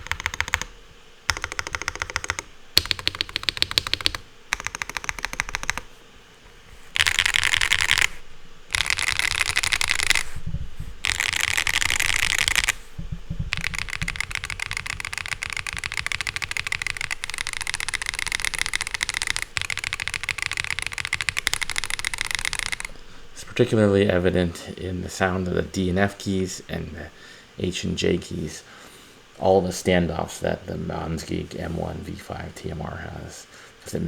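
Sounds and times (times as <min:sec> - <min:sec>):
keyboard typing clacks: 0:00.0 - 0:05.9, 0:07.0 - 0:10.3, 0:11.0 - 0:12.8, 0:13.5 - 0:22.9.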